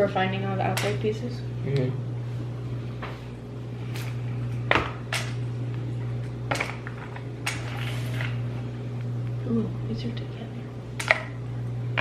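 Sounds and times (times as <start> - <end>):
steady low hum: 0.0 - 12.0.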